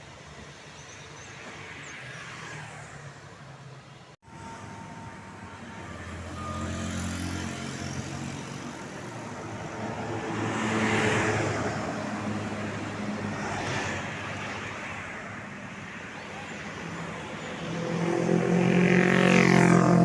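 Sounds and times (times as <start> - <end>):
vehicles passing: 0.0 - 20.0.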